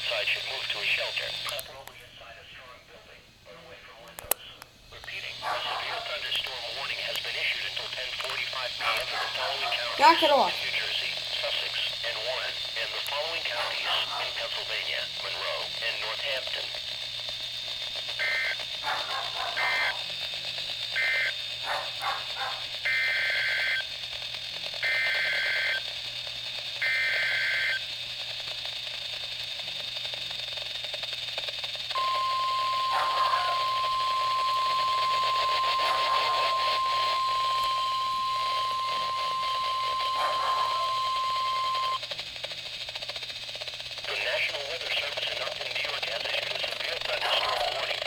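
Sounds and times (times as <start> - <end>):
steady warning alarm tone: 5.2 - 16.9, 17.5 - 24.0, 24.8 - 28.0, 31.9 - 42.1
buzzy two-tone data bursts: 18.1 - 18.6, 32.0 - 42.0.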